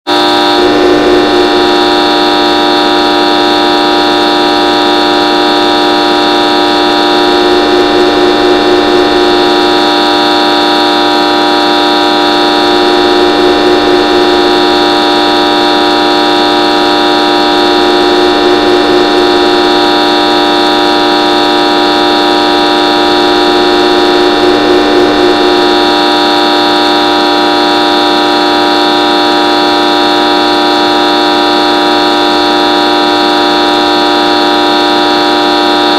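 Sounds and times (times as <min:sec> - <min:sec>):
horn-like drone: 0:00.1 - 0:35.9.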